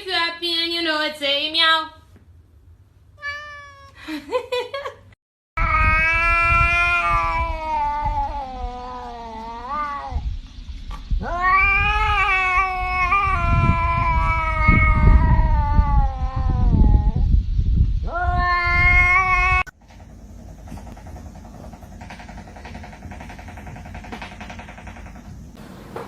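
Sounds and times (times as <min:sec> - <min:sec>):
cat yowling: 0:03.2 - 0:04.0, 0:05.6 - 0:10.2, 0:11.2 - 0:17.2, 0:18.1 - 0:19.7.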